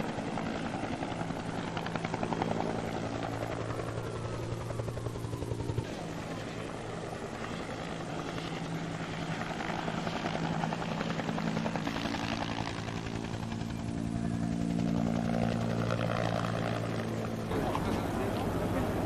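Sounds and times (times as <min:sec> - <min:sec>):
engine droning: 0:15.6 - 0:19.0.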